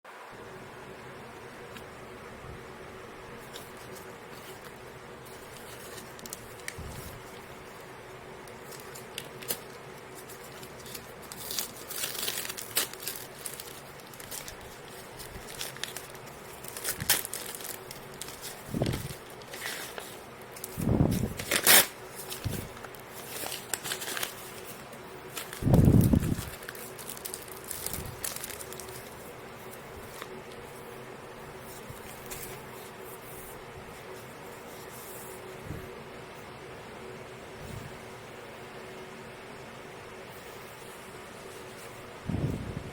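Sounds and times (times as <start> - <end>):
packaging crinkling and tearing: 3.4 - 30.8.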